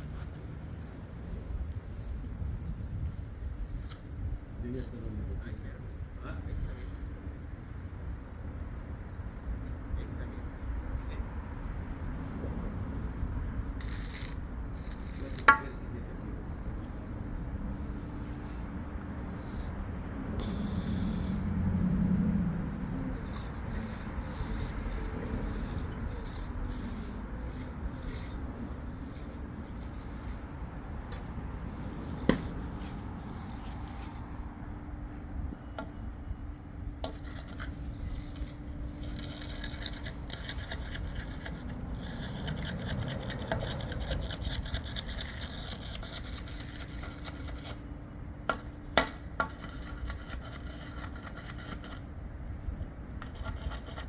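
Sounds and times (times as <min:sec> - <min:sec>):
tool scraping concrete: 0:13.8 - 0:15.9, 0:22.7 - 0:30.5, 0:31.7 - 0:34.4, 0:37.0 - 0:47.8, 0:48.5 - 0:52.1, 0:53.2 - 0:54.0.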